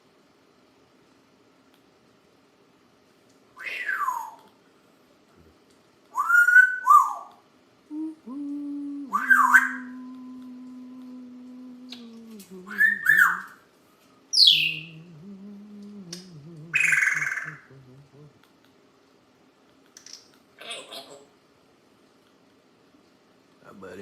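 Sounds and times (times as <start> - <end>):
steady low hum: 0.0 - 20.6
parrot whistling: 6.1 - 7.3, 8.9 - 10.0, 12.7 - 13.5, 14.4 - 15.1, 16.7 - 17.7.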